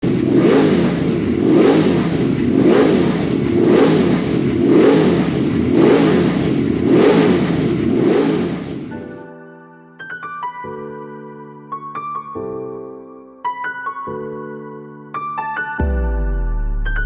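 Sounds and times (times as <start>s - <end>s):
motorcycle engine revving: 0.0s - 9.2s.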